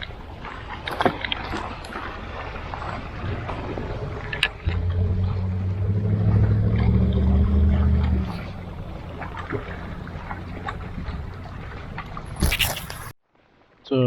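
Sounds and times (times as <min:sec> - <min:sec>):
low engine hum: 0:00.0 - 0:13.1
outdoor background noise: 0:00.0 - 0:14.0
sharp click: 0:12.4 - 0:13.1.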